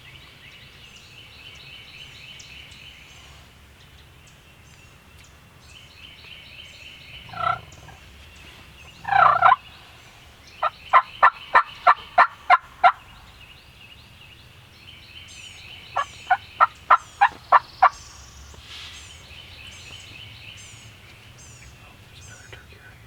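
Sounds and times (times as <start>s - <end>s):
small birds chirping: 0.0s - 23.0s
wild turkey yelping: 7.2s - 13.5s, 15.5s - 18.3s.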